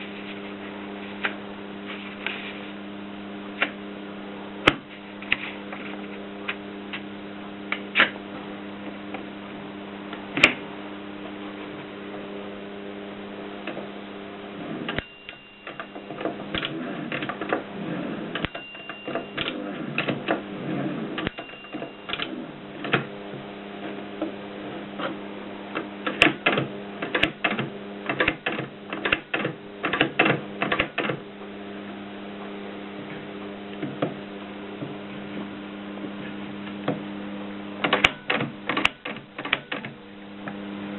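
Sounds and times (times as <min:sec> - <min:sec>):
mains hum: 0:00.0 - 0:40.9
typewriter clicks: 0:26.1 - 0:31.2, 0:37.8 - 0:39.9.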